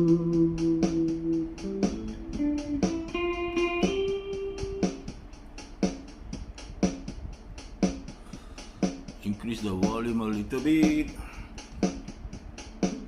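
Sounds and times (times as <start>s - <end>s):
clean electric guitar notes: 0.0s - 5.1s
backing beat: 0.0s - 13.0s.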